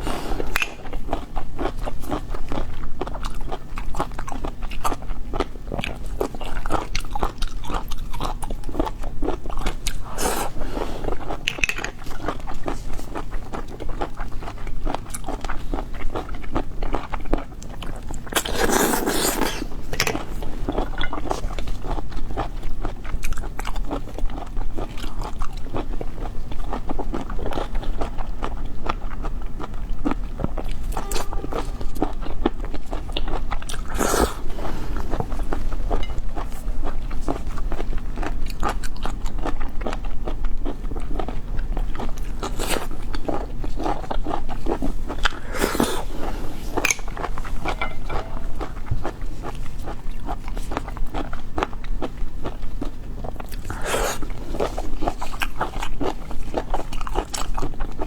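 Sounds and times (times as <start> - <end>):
chewing cockles with sharp clicks: 0.5 - 10.0.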